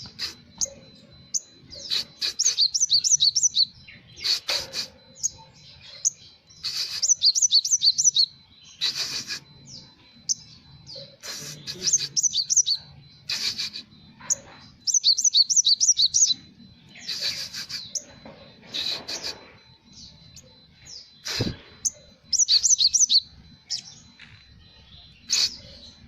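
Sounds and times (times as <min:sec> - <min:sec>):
bird chirping: 0:00.0 - 0:26.0
raspy bird calls: 0:00.0 - 0:26.0.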